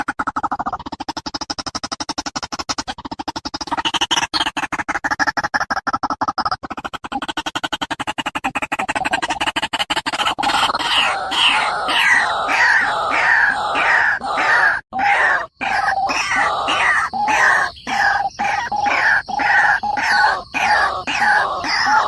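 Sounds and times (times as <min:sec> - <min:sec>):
waterhen calling: 0:10.5 - 0:22.0.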